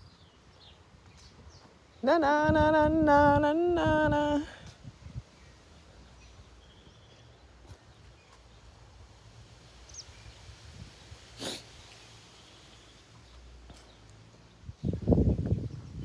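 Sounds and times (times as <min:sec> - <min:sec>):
short noisy animal burst: 0:11.4 - 0:11.8.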